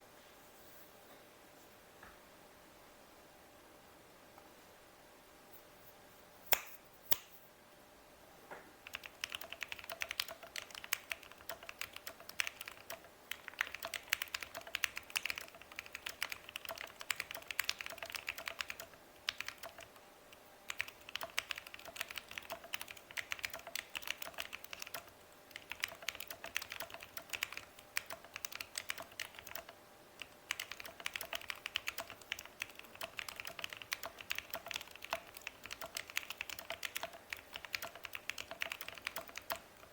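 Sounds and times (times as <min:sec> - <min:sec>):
mechanical keyboard typing: 0:08.8 - 0:20.0, 0:20.7 - 0:39.9.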